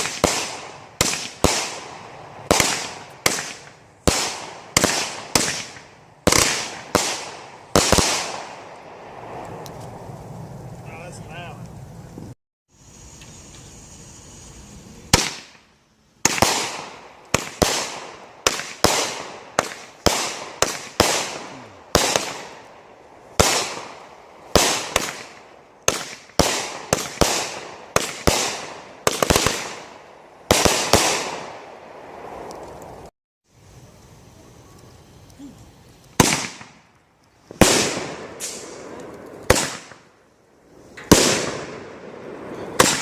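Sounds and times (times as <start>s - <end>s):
fireworks bangs with hiss: 0.0s - 43.0s.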